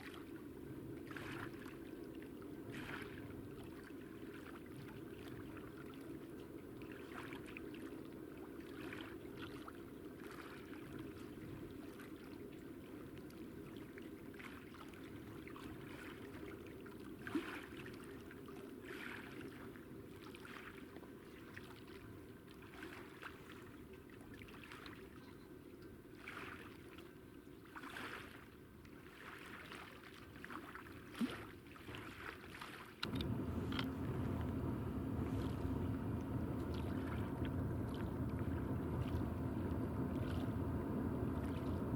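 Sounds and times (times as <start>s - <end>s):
deep rumble: 33.0s - 41.9s
distant train rumble: 33.0s - 41.9s.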